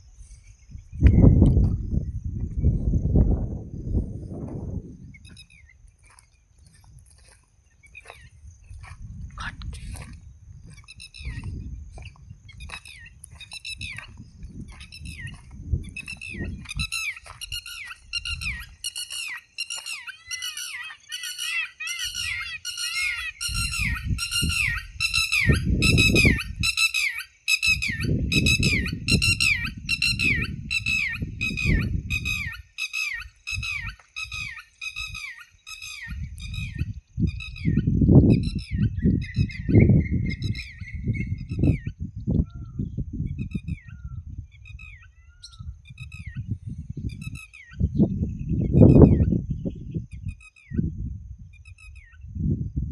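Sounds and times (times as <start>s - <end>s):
bird chirping: 10.6s - 50.9s, 51.6s - 52.3s.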